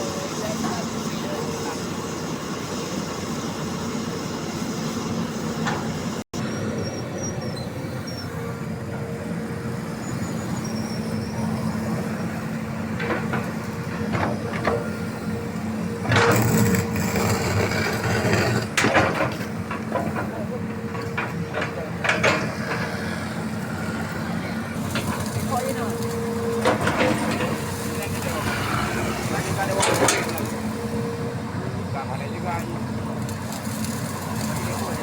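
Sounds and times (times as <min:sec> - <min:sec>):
excavator diesel engine running: 0:00.0 - 0:35.0
louder bursts of engine noise: 0:26.6 - 0:30.7.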